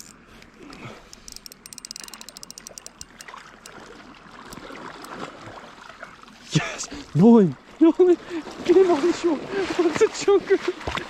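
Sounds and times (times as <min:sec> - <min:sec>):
fishing reel clicking: 0:00.0 - 0:00.2, 0:01.0 - 0:03.8
water trickling and sloshing: 0:02.8 - 0:11.0.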